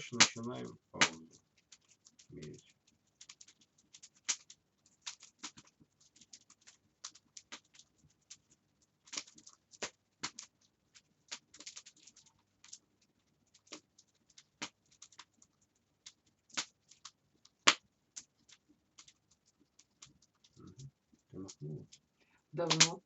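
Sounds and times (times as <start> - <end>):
loud crack of fire: 0.0 - 1.3, 3.9 - 7.8, 22.6 - 23.0
wood fire crackling: 0.0 - 23.0.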